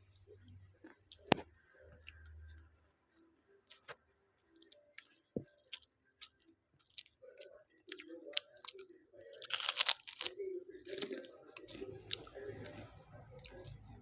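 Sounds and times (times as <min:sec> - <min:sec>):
person chewing fried rice: 0:04.6 - 0:13.8
loud crunch: 0:09.4 - 0:10.3.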